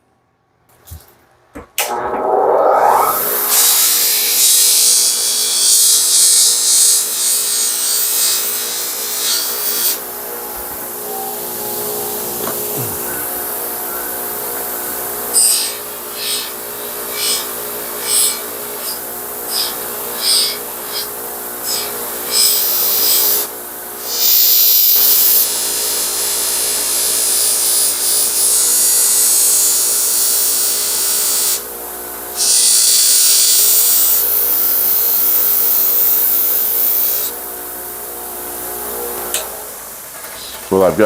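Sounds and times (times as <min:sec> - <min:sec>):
polishing buffer running: 0:01.8 - 0:40.2
loud hiss of metal on buffing wheel: 0:15.3 - 0:31.6, 0:32.4 - 0:37.4.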